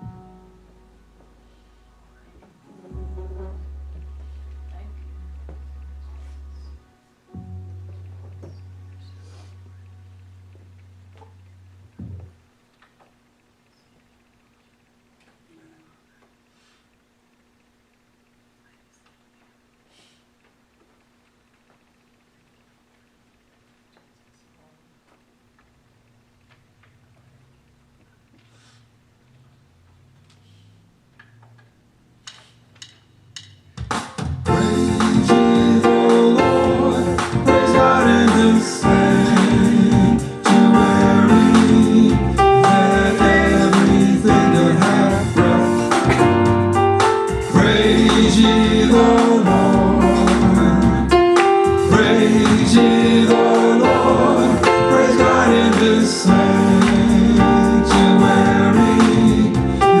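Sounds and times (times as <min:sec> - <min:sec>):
gospel band with singing: 0:34.4 - 1:00.0.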